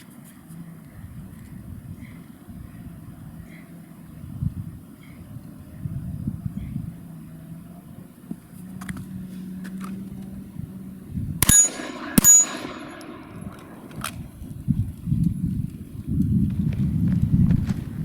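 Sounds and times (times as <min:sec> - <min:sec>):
steel gong ringing: 0:11.4 - 0:14.5
pistol shots: 0:11.4 - 0:14.7.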